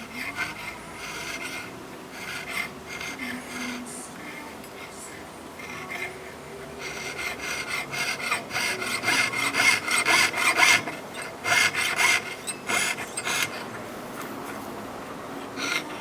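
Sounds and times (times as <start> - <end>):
fine saw rasping through metal: 0.0 - 16.0.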